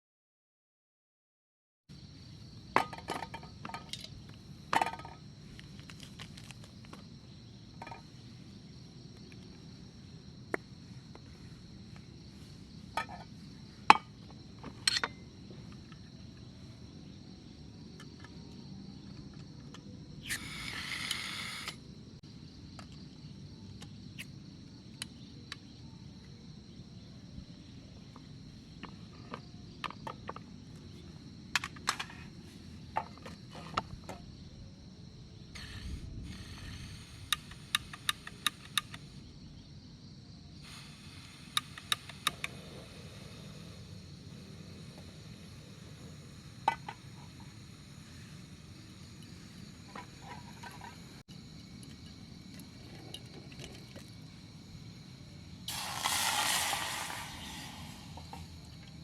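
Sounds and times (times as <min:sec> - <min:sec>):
insects chirring: 0:01.9 - 0:59.0
brief hiss: 0:20.2 - 0:21.8, 0:35.6 - 0:39.1, 0:40.6 - 0:43.9, 0:55.7 - 0:58.9.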